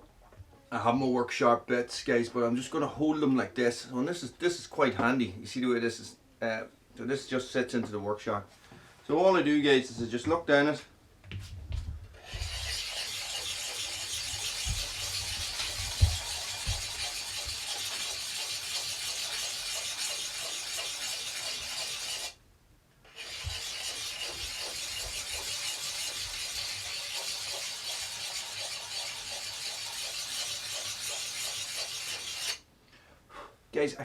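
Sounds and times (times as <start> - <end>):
sharpener rasping on axe edge: 12.2 - 22.3, 23.1 - 32.6.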